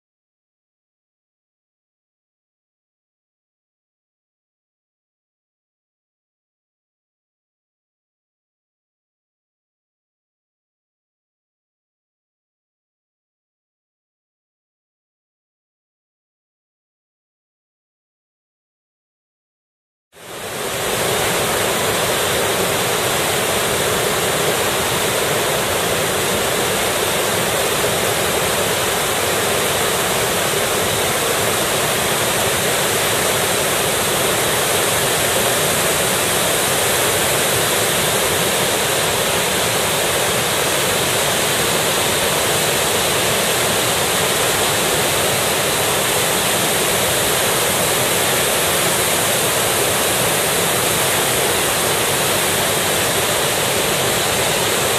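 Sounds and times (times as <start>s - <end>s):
waterfall rushing: 20.2s - 54.9s.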